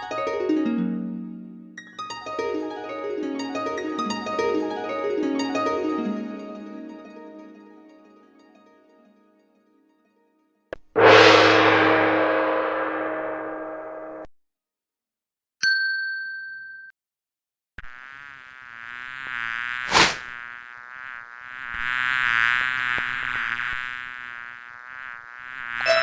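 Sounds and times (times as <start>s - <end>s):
bell-like ding: 11.0s - 14.3s
housefly buzzing: 17.8s - 26.0s
sharp click: 19.9s - 20.3s.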